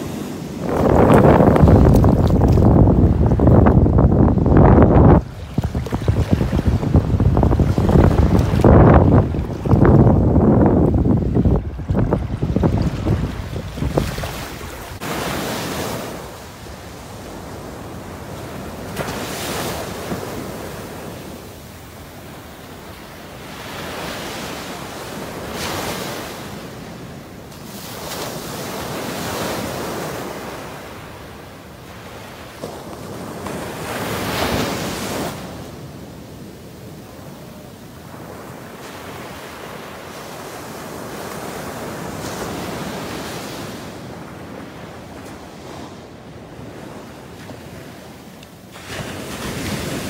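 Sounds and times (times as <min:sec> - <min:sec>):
wind on microphone: 0:00.0 - 0:22.7
ocean waves breaking: 0:00.0 - 0:26.9.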